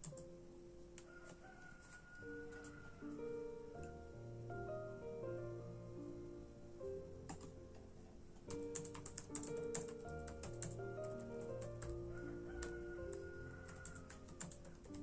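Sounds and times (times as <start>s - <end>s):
computer keyboard typing: 0.0s - 0.2s, 7.3s - 7.5s, 8.5s - 12.0s, 12.6s - 15.0s
soft instrumental music: 0.0s - 15.0s.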